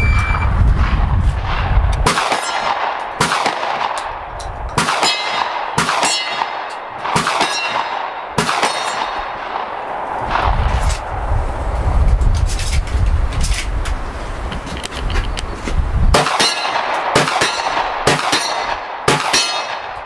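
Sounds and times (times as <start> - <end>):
shotgun shots: 0.8 - 10.6, 16.1 - 20.0
steel targets clanging: 4.4 - 7.9, 8.6 - 9.2, 19.3 - 19.8.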